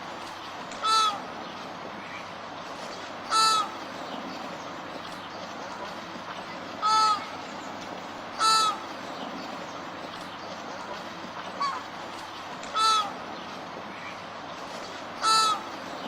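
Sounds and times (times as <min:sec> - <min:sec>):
steady background hiss: 0:00.0 - 0:16.0
flamingo honking: 0:00.8 - 0:01.3, 0:03.2 - 0:03.8, 0:06.8 - 0:07.4, 0:08.3 - 0:08.8, 0:12.6 - 0:13.2, 0:15.2 - 0:15.8.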